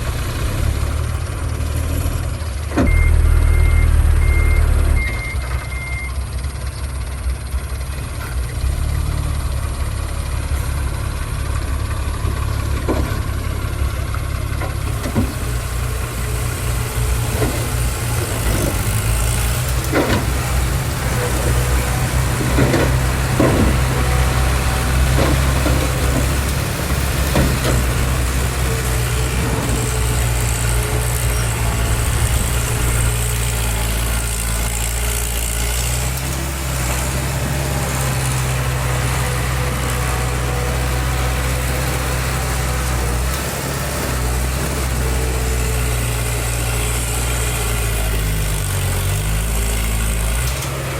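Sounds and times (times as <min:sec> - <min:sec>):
diesel machinery rumbling: 0:00.0 - 0:50.9
knocks and clanks: 0:12.2 - 0:50.9.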